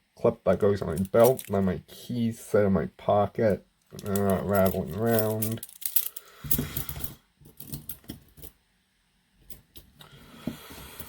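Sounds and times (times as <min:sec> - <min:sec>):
handling clicks and knocks: 0:00.9 - 0:01.6, 0:04.0 - 0:08.5.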